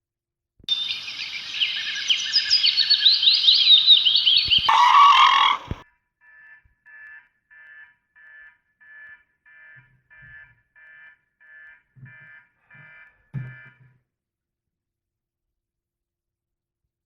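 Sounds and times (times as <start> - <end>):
alarm clock beeping: 6.2 - 13.9.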